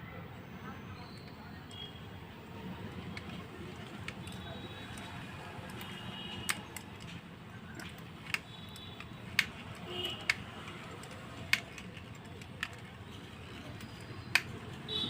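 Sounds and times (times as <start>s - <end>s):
small tool clicks and taps: 3.1s - 7.2s, 7.8s - 14.6s.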